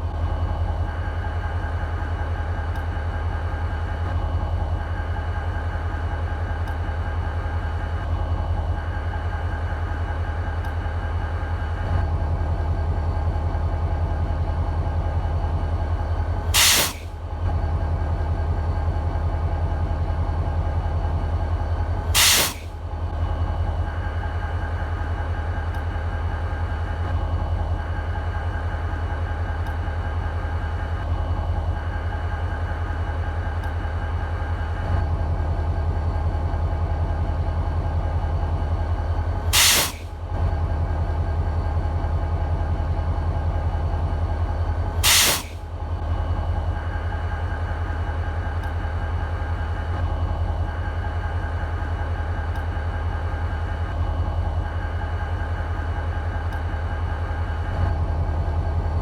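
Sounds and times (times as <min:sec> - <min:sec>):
diesel locomotive idling: 0:00.0 - 0:59.0
loud air hiss bursts: 0:16.6 - 0:17.1, 0:22.2 - 0:22.7, 0:39.5 - 0:40.1, 0:45.0 - 0:45.6.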